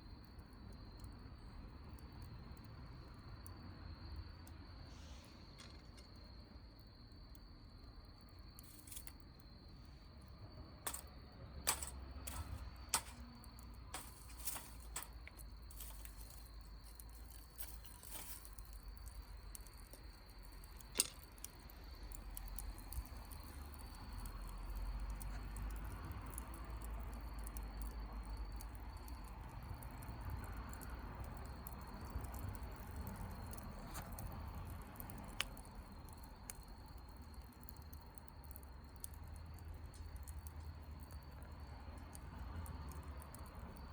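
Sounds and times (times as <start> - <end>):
campfire crackling: 5.2 - 43.9
fire popping: 8.5 - 43.9.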